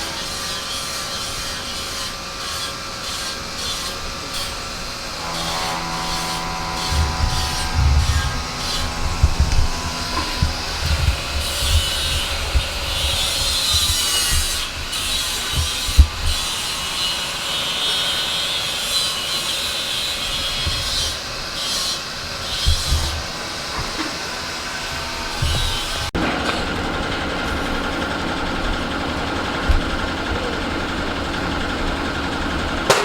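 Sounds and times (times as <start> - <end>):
machinery whirring and grinding: 0.0 - 33.0
low thuds: 5.2 - 14.6.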